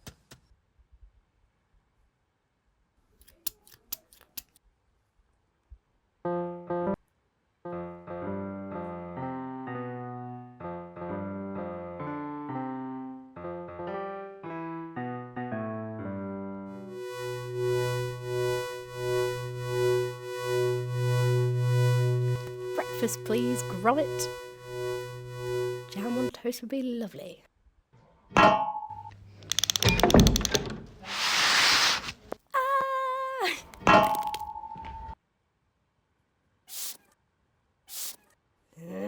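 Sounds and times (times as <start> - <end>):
held synthesizer chord: 16.8 - 26.3
sharp clicks: 29.4 - 30.6.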